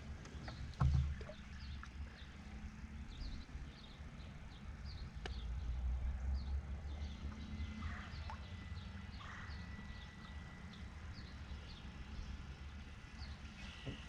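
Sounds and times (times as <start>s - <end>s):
dull thump: 0.5s - 1.4s.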